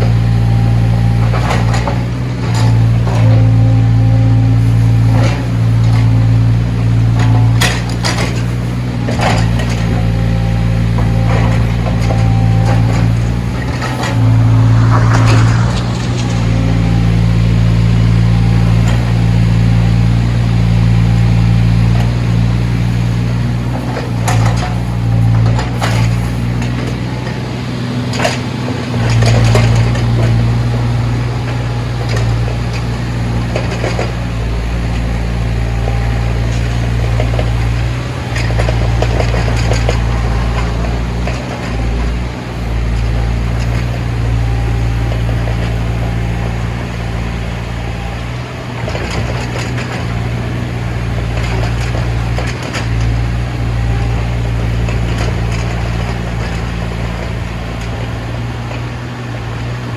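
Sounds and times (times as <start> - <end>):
diesel engine running: 0.0 - 59.9
machine clanks and rattles: 21.7 - 59.0.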